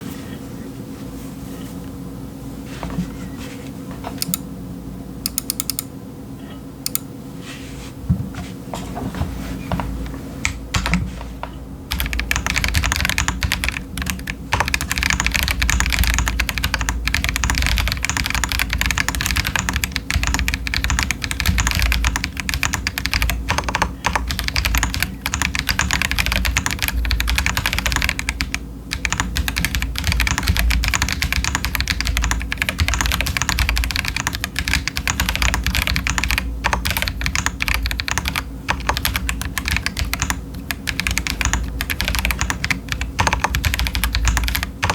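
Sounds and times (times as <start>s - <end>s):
fast mechanical keyboard typing: 5.3s - 5.9s, 11.9s - 44.9s.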